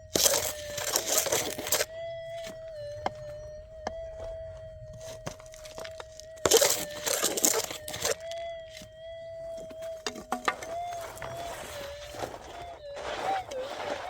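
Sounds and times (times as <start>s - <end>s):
metal detector tone: 0.0s - 14.0s
pick digging into gravelly ground: 0.1s - 2.5s, 9.6s - 14.0s.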